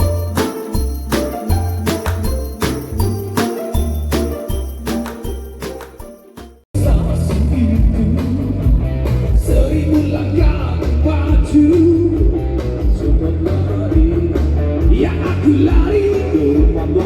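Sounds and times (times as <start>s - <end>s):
live rock band playing: 0.0s - 6.1s, 6.8s - 16.3s
jingling music: 0.0s - 6.7s
person singing: 6.8s - 8.8s.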